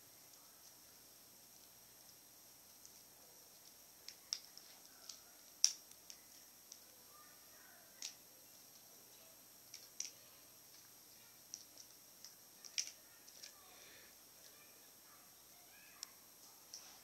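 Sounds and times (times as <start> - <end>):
small parts and tools clicking: 1.5 - 7.0, 7.9 - 13.7.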